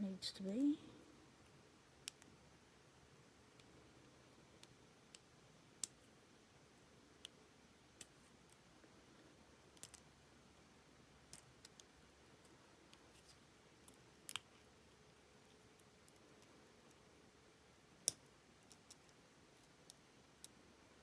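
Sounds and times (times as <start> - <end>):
light clicks of padlock parts: 9.7 - 10.1, 18.0 - 20.6.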